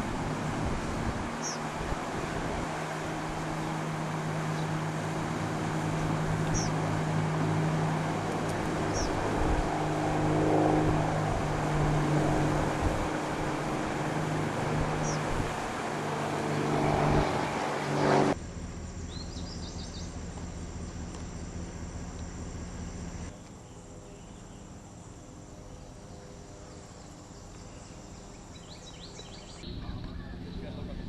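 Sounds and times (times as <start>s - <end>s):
loud rushing noise: 0.0s - 18.4s
bird chirps: 1.4s - 1.6s, 6.4s - 6.8s, 8.9s - 9.2s, 15.0s - 15.2s, 18.9s - 21.5s, 23.4s - 31.0s.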